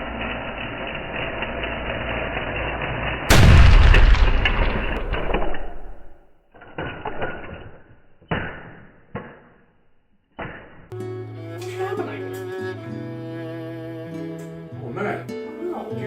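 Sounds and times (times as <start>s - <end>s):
crashes: 3.3s - 6.2s
loud explosion: 3.3s - 6.2s.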